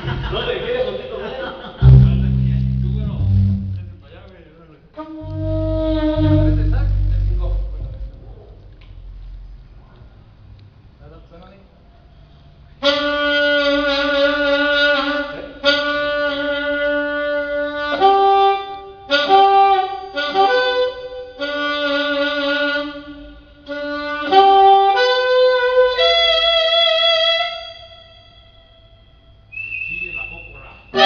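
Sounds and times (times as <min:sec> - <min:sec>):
solo saxophone: 0:01.8 - 0:04.0, 0:05.2 - 0:09.5, 0:12.8 - 0:23.1, 0:23.7 - 0:26.4.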